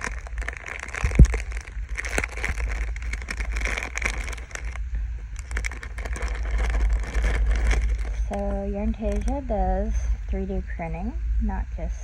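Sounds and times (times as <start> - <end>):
packaging rustling and crinkling: 0.0 - 9.4.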